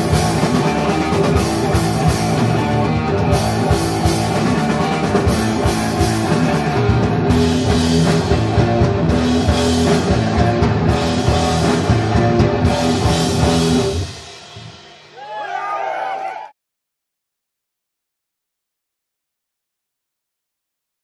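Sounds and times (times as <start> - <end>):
live rock band playing: 0.0 - 15.2.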